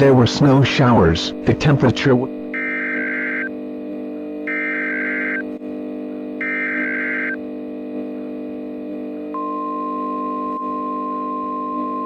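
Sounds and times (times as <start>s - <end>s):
steady warning alarm tone: 0.0s - 12.0s
buzzy digital data burst: 0.4s - 3.5s, 4.5s - 5.4s, 6.4s - 7.4s.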